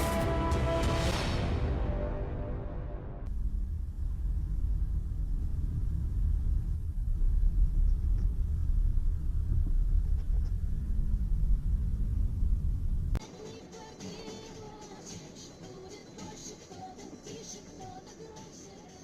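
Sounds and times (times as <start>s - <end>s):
low vehicle rumble: 0.0s - 13.2s.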